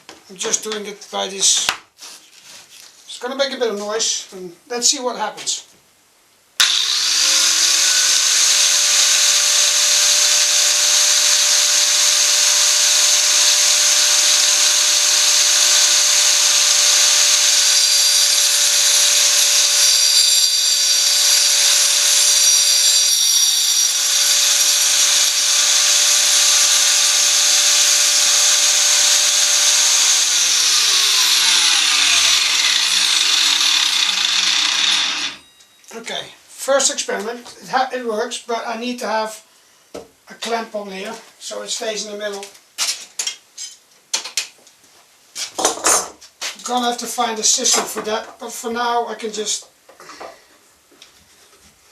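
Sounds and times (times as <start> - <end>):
angle grinder cutting wood: 6.6 - 35.5
grinder winding down: 6.6 - 35.5.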